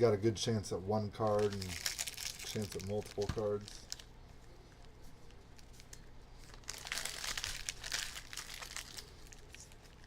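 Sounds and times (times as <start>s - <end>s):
plastic wrappers crinkling: 1.2s - 4.1s, 5.5s - 10.0s.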